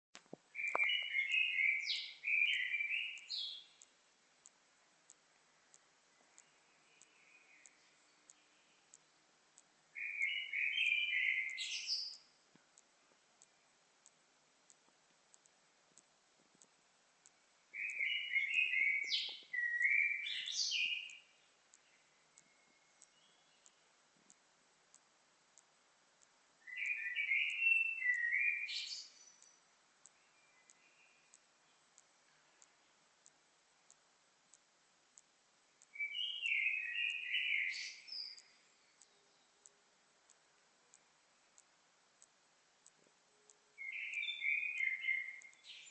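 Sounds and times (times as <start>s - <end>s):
faint regular ticking: 0.2s - 45.9s
songbird singing: 0.5s - 45.9s
songbird whistling: 0.6s - 3.7s, 10.0s - 12.2s, 17.8s - 21.2s, 26.6s - 29.5s, 35.9s - 38.4s, 43.8s - 45.9s.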